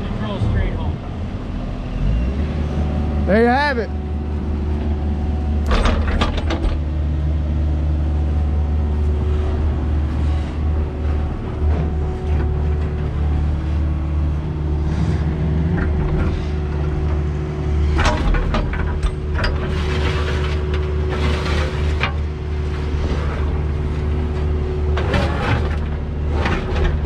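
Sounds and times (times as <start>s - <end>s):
excavator diesel engine under load: 0.0s - 27.0s
auger knocks and clanks: 5.6s - 6.9s, 17.9s - 22.2s.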